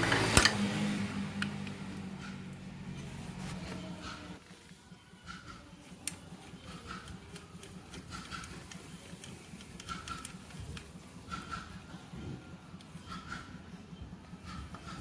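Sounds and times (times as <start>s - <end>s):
faint clicks and ticks: 5.2s - 12.0s.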